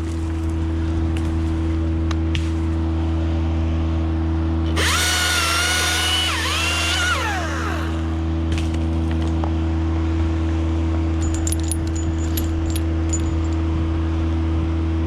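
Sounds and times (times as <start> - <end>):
low engine hum: 0.0 - 15.0
chainsaw electric motor whine: 4.7 - 8.7.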